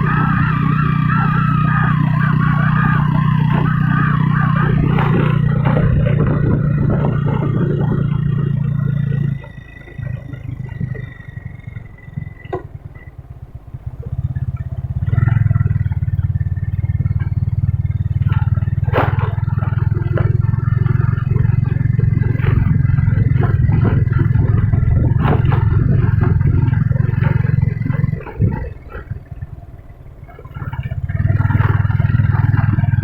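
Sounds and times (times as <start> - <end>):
vehicle engine running: 0.0 - 33.0
rattling and clattering knocks: 3.4 - 13.2, 14.0 - 29.4.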